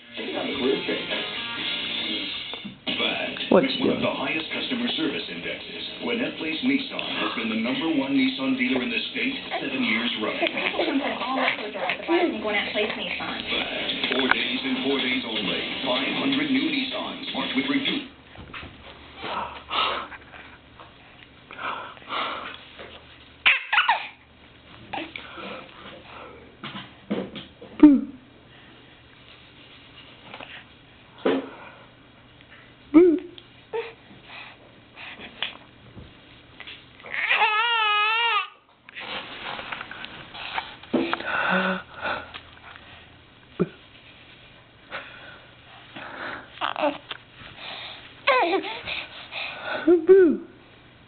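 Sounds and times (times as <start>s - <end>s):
baby grunting and cooing: 9.5s - 12.3s, 37.0s - 38.6s, 46.5s - 47.1s, 48.2s - 49.1s
baby squealing: 23.4s - 24.2s, 37.0s - 38.6s, 46.6s - 47.0s, 48.3s - 48.8s
baby breathy noises: 45.9s - 49.9s.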